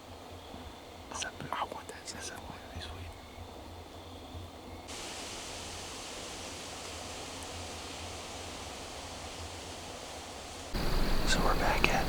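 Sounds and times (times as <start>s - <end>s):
wind hissing: 4.9s - 12.0s.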